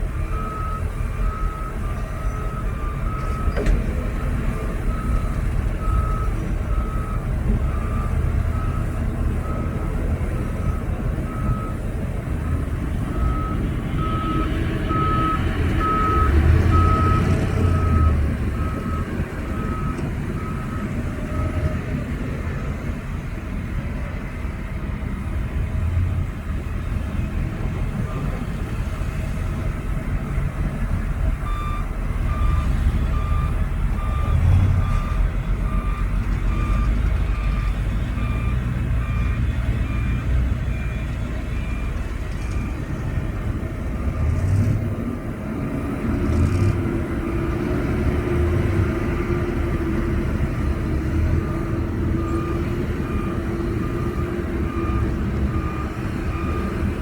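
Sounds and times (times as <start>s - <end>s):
heavy diesel machinery rumbling: 0.0s - 57.0s
reversing alarm beeps: 0.1s - 22.0s, 31.3s - 44.6s, 51.3s - 57.0s.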